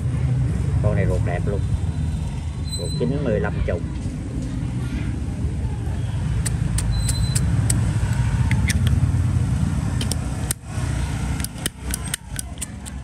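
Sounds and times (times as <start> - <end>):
passing motor vehicle rumble: 0.0 - 13.0
metallic lighter clicks: 6.4 - 9.0, 10.0 - 10.6, 11.4 - 13.0.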